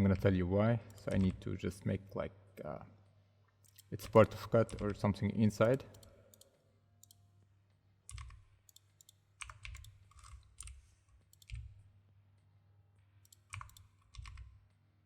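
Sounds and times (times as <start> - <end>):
mouse and keyboard clicks: 8.1 - 11.7, 13.3 - 14.5.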